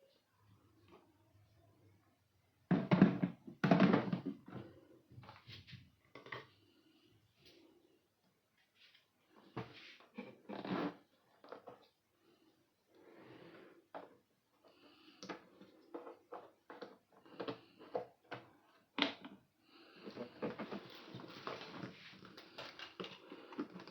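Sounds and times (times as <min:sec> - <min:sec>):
items knocking and thudding: 0:02.7 - 0:05.5.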